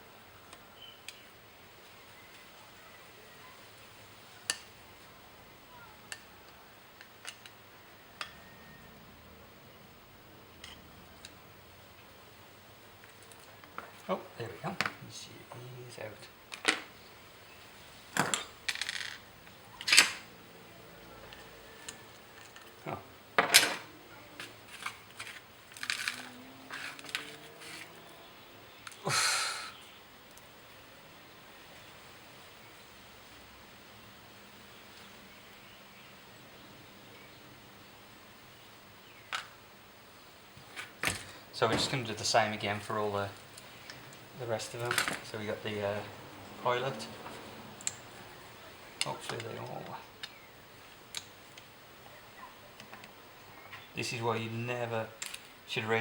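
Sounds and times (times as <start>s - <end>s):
metal parts clicking and clattering: 18.2s - 19.2s, 19.8s - 20.3s, 24.7s - 27.9s.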